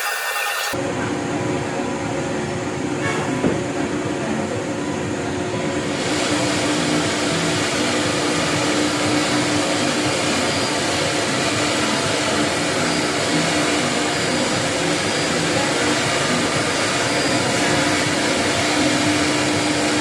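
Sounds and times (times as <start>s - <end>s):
router machine running: 0.0s - 0.8s, 5.9s - 20.0s.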